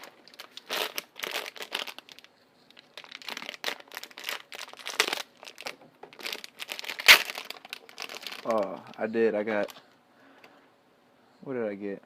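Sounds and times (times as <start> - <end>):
packaging crinkling and rustling: 0.0 - 9.8.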